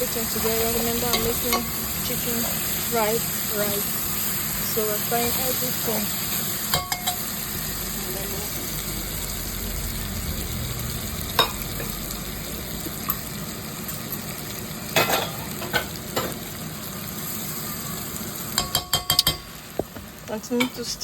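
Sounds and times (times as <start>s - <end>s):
food sizzling in a pan: 0.0s - 21.0s
spoon knocking against pan: 6.7s - 7.2s, 18.6s - 20.8s.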